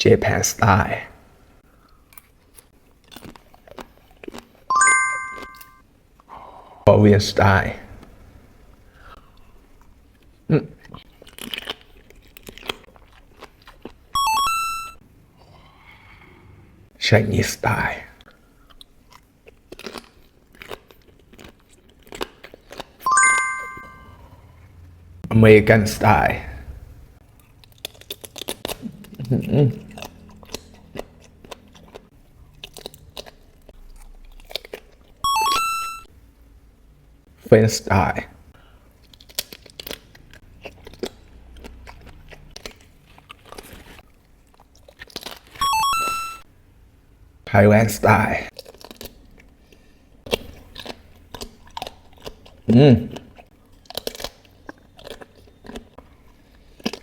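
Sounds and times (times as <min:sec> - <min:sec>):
crunchy chewing: 0:01.8 - 0:04.7, 0:09.1 - 0:14.1, 0:18.2 - 0:23.0, 0:26.7 - 0:35.2, 0:38.9 - 0:45.6, 0:48.5 - 0:57.0
bright chime: 0:04.7 - 0:05.8, 0:23.1 - 0:24.3
electronic jingle of beeping tones: 0:04.7 - 0:05.8, 0:23.1 - 0:24.2, 0:45.6 - 0:46.4.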